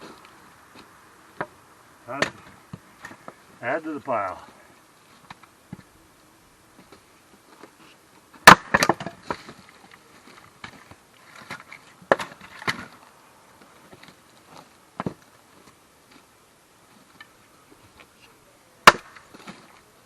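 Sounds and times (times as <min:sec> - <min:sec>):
axe striking wood: 0:02.1 - 0:02.5, 0:08.4 - 0:09.3, 0:12.1 - 0:12.9, 0:18.8 - 0:19.6
wood pieces knocking and clattering: 0:08.4 - 0:13.0.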